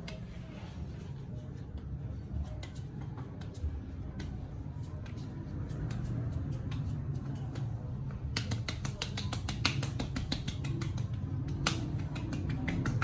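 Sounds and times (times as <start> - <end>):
percussive head massage taps: 8.3 - 13.0.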